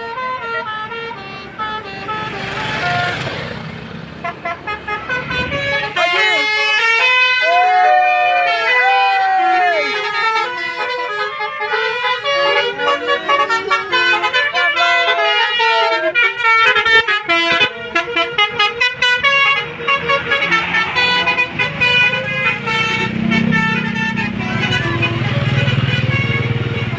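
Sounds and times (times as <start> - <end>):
musical bus horn tune: 0.0 - 26.9.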